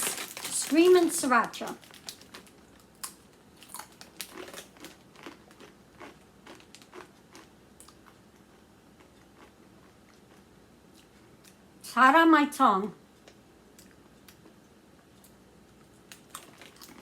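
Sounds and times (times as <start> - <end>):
chip crunching and chewing: 0.0 - 11.6, 15.9 - 17.0.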